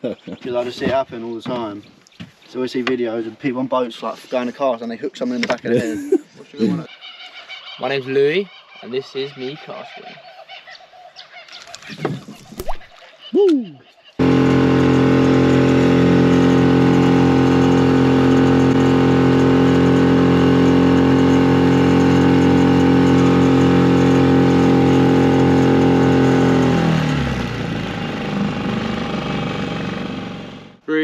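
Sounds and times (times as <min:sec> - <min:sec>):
outboard motor running: 0:14.2 - 0:30.8.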